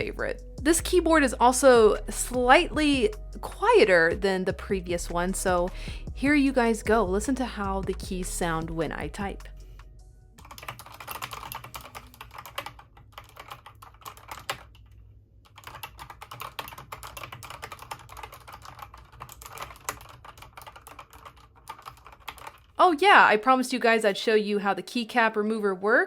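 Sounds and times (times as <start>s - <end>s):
mechanical keyboard typing: 10.4s - 22.7s.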